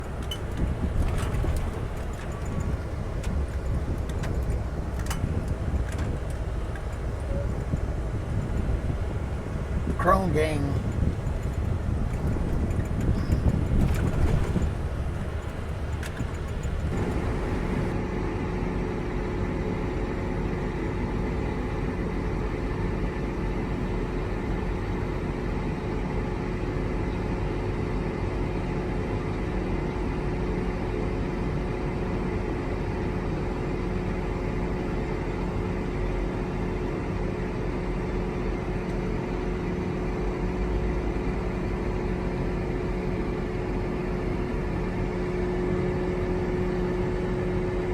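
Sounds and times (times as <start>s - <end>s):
steady hum: 0.0s - 18.0s
farm machinery engine drone: 0.0s - 47.9s.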